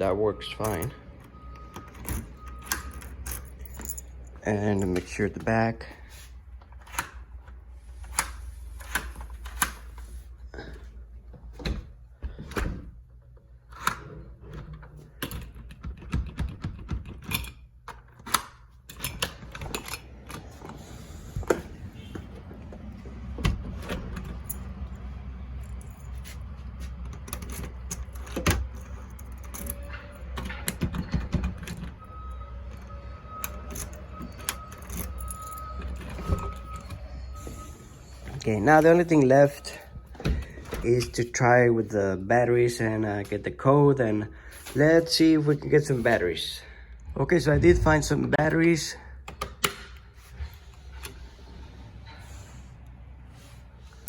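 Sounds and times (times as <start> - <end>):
keys jangling: 1.8 - 5.3, 23.9 - 32.0, 32.7 - 37.1
deadbolt hardware clicks and knocks: 14.8 - 20.6, 27.1 - 32.0, 49.2 - 50.1.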